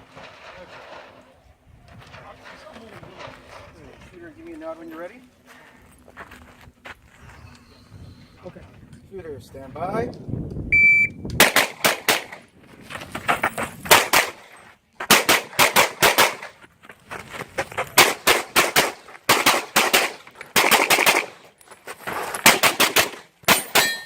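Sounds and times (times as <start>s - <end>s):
rapid gunshots: 15.1s - 16.5s, 18.0s - 21.4s, 22.4s - 23.9s.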